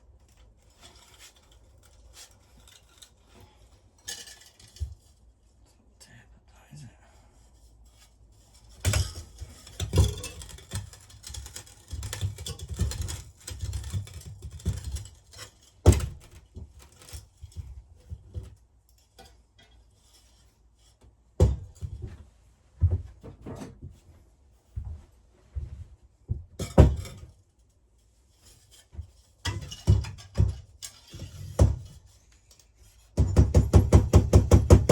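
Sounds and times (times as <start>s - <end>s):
metal parts scraping and rattling: 0.2s - 5.3s, 7.8s - 21.0s, 28.0s - 33.2s.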